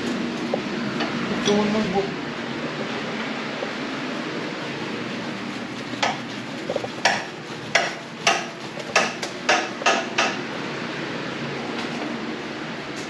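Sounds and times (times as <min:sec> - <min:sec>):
steady shop hum: 0:00.0 - 0:13.0
sharp knocks on metal: 0:07.0 - 0:10.4.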